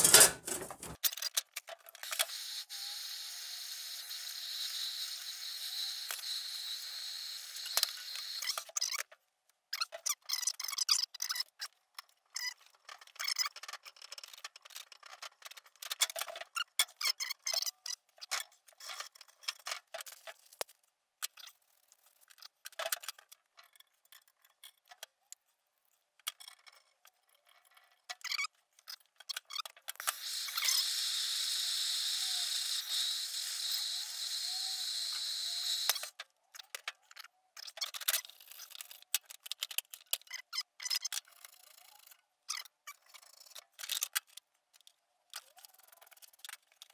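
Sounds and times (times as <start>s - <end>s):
hand tools clicking and scraping: 0.0s - 1.0s, 30.0s - 36.1s.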